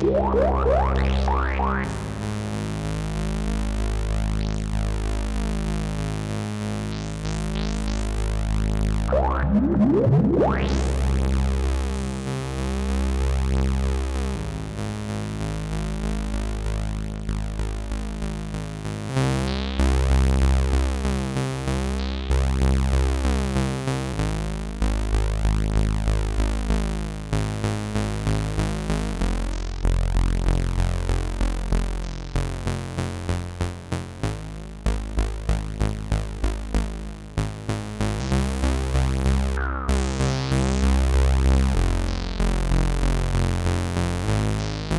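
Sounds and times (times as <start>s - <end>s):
synthesizer sequenced pattern: 0.0s - 3.2s, 7.4s - 12.0s, 34.4s - 44.9s
deep synth bass: 0.0s - 44.9s.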